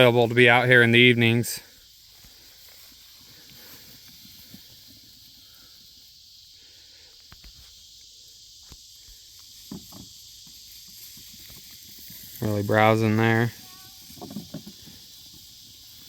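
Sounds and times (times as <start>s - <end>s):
crickets chirping: 0.0s - 16.0s
faint rustles: 0.0s - 16.0s.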